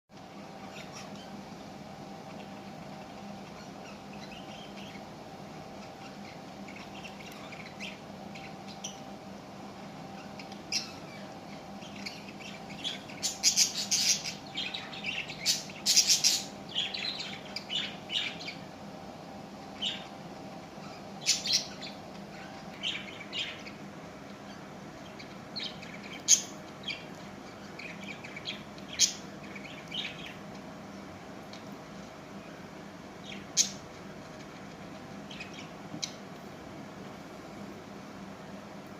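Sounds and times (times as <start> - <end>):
parrot chirping and squawking: 0.6 - 1.6, 2.3 - 5.2, 10.1 - 18.7, 20.8 - 30.4.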